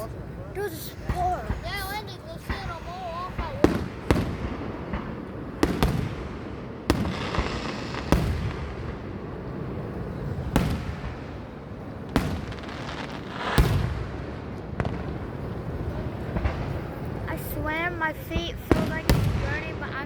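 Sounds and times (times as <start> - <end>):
firework shells booming: 0.0 - 20.0.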